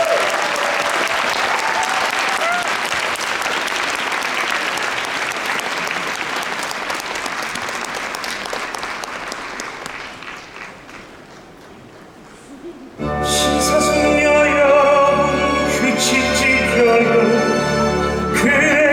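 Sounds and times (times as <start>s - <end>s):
theatre audience applauding: 0.0s - 13.0s.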